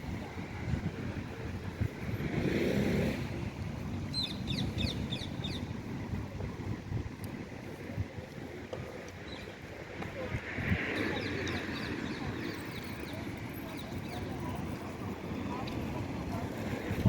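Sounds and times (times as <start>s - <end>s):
bird chirping: 4.1s - 5.7s.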